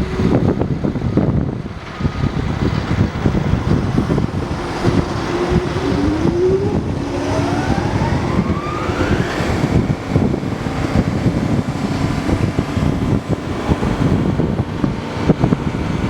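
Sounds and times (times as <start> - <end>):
excavator diesel engine running: 0.0 - 16.0
rising whine: 0.0 - 16.0.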